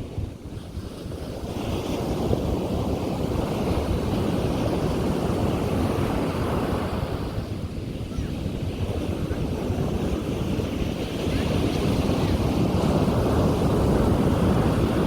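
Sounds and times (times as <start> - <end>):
wind on microphone: 0.0 - 15.0.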